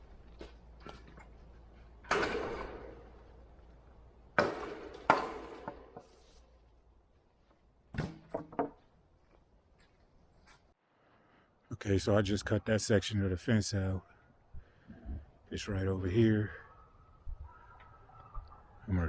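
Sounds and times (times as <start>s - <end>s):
wire fencing clattering: 4.4s - 6.0s.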